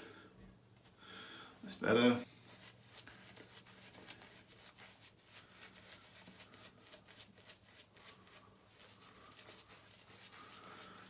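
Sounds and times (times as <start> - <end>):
shaving brush rustling on face: 2.2 - 11.0.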